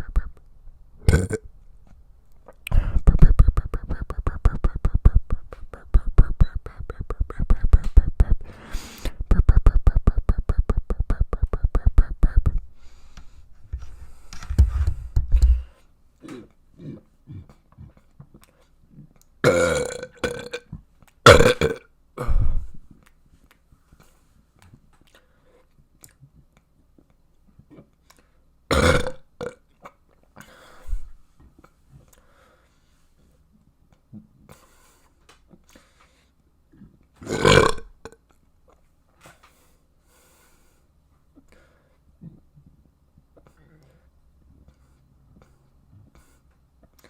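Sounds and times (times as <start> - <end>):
person burping loudly: 1.0 - 1.5, 19.4 - 20.6, 21.3 - 22.5, 28.7 - 29.6, 37.2 - 38.2.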